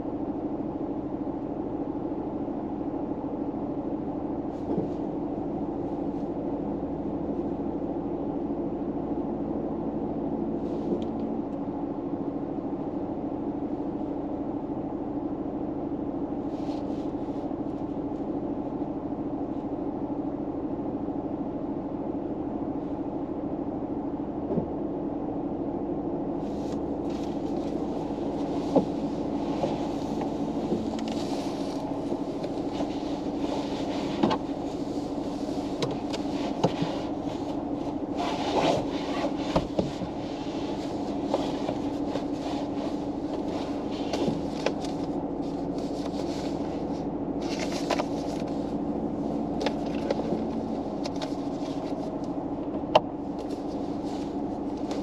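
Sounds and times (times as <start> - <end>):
low hum inside car: 0.0 - 55.0
soft rustles: 16.5 - 18.3, 26.4 - 52.4, 53.2 - 55.0.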